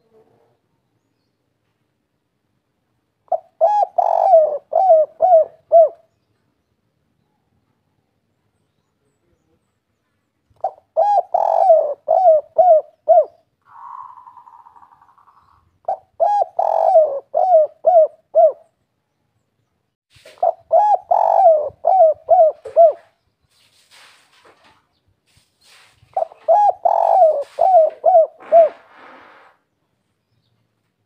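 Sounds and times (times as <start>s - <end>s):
dove cooing: 3.3s - 6.1s, 10.6s - 18.7s, 20.4s - 23.2s, 26.2s - 29.5s.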